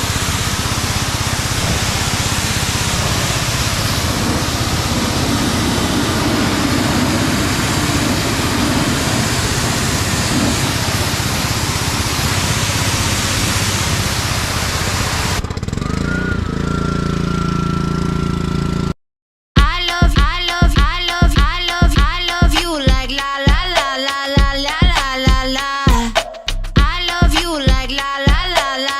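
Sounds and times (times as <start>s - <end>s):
pressure washer spray hissing: 0.0s - 15.4s
pressure washer motor running: 0.0s - 18.9s.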